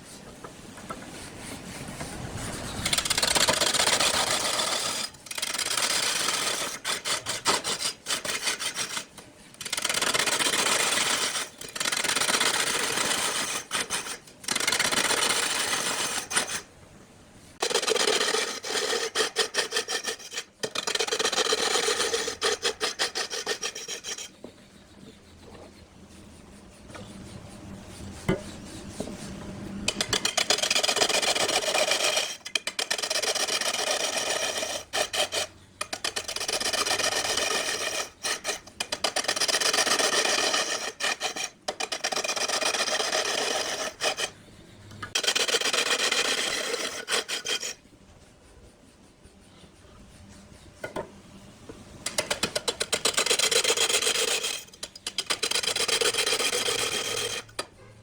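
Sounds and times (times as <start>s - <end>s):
tool rasping on turning wood: 1.1s - 16.7s, 17.6s - 51.0s, 52.0s - 58.0s.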